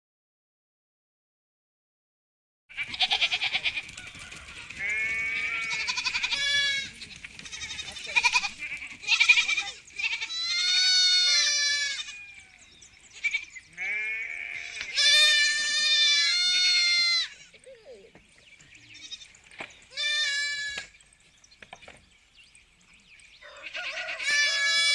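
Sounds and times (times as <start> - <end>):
sheep bleating: 2.7 - 12.6, 13.2 - 17.7, 18.8 - 20.9, 23.4 - 24.9.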